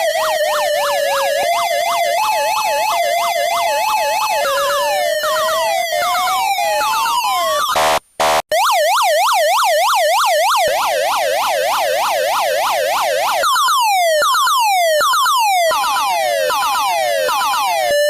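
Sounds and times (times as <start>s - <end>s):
electronic police siren: 0.0s - 18.0s
buzzing horn blast: 7.7s - 8.4s.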